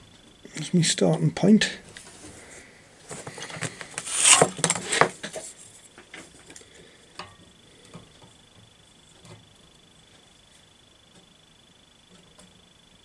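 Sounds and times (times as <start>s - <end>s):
scraping on steel tube: 3.1s - 5.2s.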